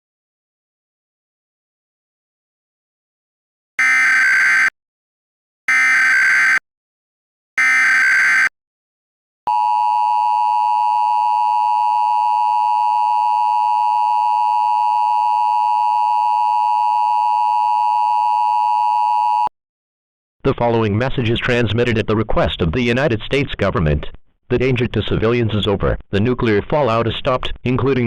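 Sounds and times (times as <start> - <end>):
steady two-tone attention signal: 3.8 - 4.7, 5.7 - 6.6, 7.6 - 8.5.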